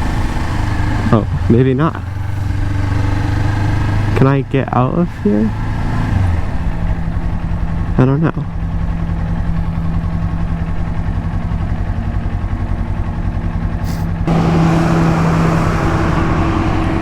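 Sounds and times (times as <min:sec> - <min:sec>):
motorcycle engine idling: 0:00.0 - 0:17.0
loud rushing noise: 0:14.3 - 0:17.0.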